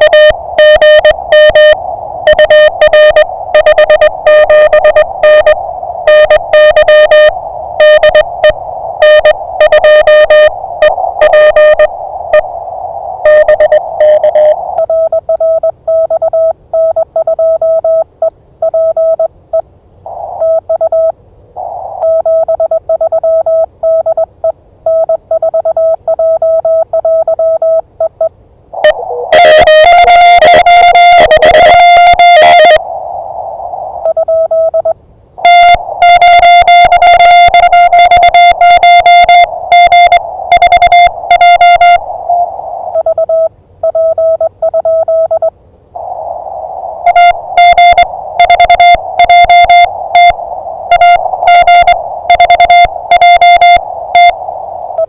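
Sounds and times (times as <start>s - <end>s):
clean morse code tone: 0.0s - 11.9s, 13.2s - 18.0s, 28.8s - 32.8s, 34.1s - 42.0s, 47.0s - 54.4s
buzzy morse code: 0.0s - 12.4s, 13.2s - 16.2s, 28.8s - 32.8s, 34.1s - 45.5s, 47.0s - 55.0s
receiver hiss: 0.0s - 15.9s, 18.0s - 26.1s, 28.3s - 55.0s.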